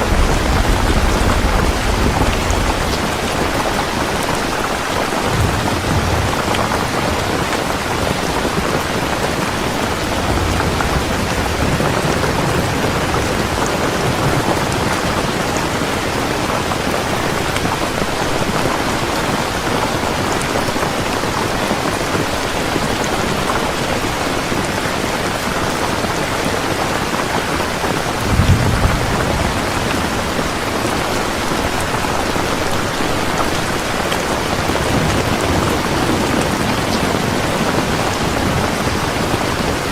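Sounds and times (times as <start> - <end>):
low rumble of thunder: 0.0 - 17.8, 28.1 - 39.9
steady rain falling: 0.0 - 39.9.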